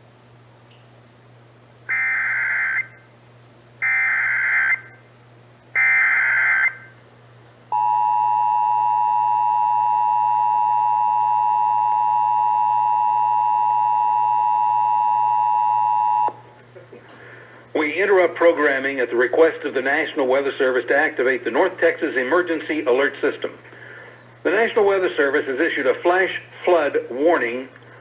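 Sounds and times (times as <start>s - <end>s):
two-tone attention signal: 7.8s - 16.3s.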